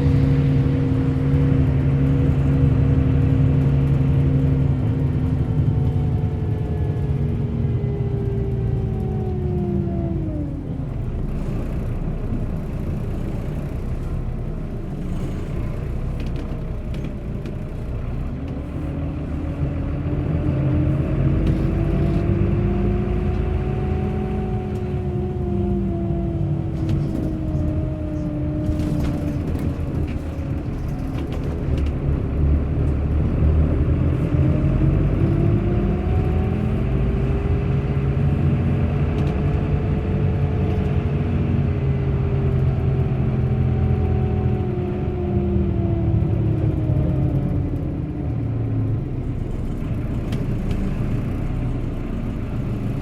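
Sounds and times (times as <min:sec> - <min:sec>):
bus engine and road rumble: 0:00.0 - 0:53.0
whining drivetrain: 0:00.0 - 0:53.0.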